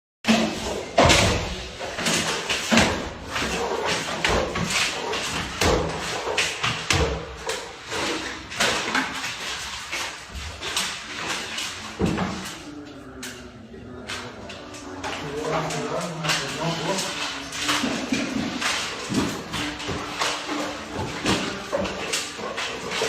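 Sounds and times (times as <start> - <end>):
irregular knocks and thuds: 0.3 - 12.6
busy background noise: 10.6 - 23.0.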